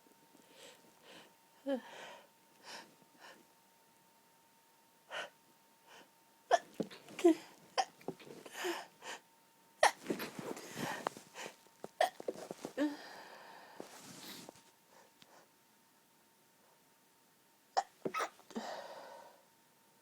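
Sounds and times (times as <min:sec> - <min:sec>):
soft breaths: 0:00.4 - 0:03.5, 0:10.0 - 0:11.7, 0:12.3 - 0:15.5, 0:18.2 - 0:19.5
woman's stifled sneezes: 0:17.8 - 0:18.5.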